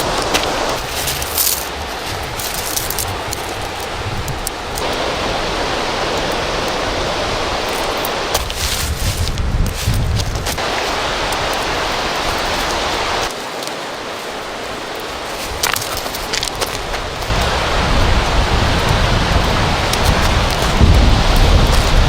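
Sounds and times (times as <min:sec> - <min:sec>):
low rumbling: 0:00.0 - 0:07.7, 0:16.9 - 0:22.0
river water rushing: 0:00.0 - 0:22.0.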